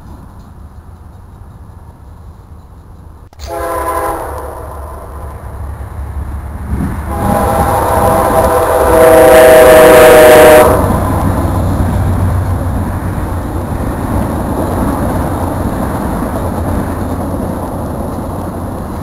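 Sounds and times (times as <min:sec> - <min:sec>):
train rumbling: 0:00.0 - 0:19.0
locomotive air horn chord: 0:03.4 - 0:05.4, 0:07.0 - 0:11.2.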